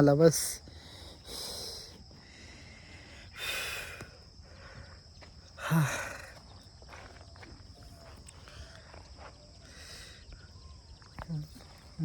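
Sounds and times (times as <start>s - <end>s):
man breathing heavily: 0.6s - 7.1s, 8.4s - 10.6s.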